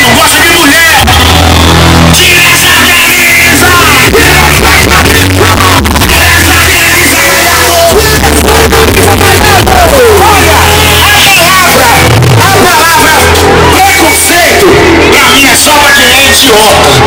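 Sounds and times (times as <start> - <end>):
loud music with heavy bass: 0.0 - 17.0
person singing and yelling: 0.0 - 17.0.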